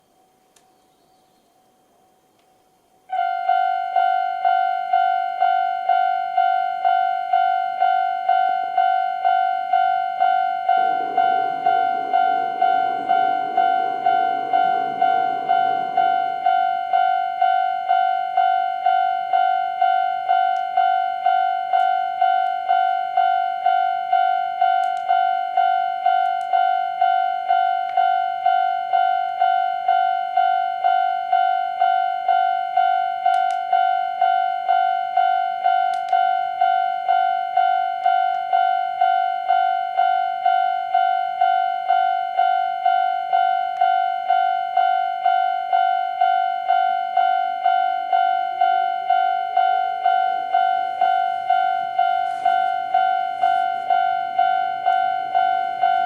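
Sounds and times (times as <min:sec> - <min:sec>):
electric train motor whine: 0:00.0 - 0:56.0
level crossing alarm bell ringing: 0:03.1 - 0:56.0.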